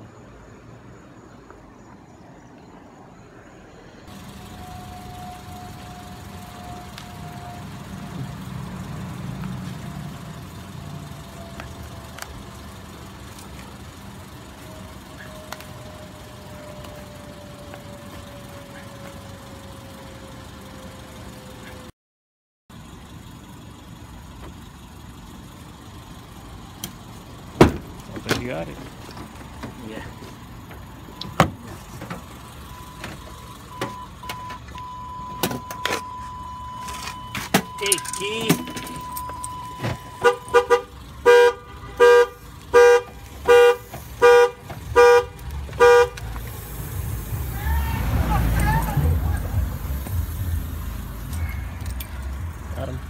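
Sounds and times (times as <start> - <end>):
car alarm horn honking: 4.1 - 8.3, 32.5 - 46.2
vehicle engine idling: 4.1 - 21.9, 22.7 - 53.0.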